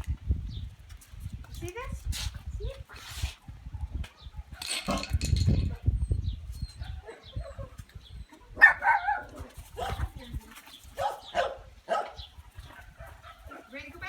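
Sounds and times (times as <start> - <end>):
puppies yapping: 6.6 - 10.2, 11.0 - 13.8.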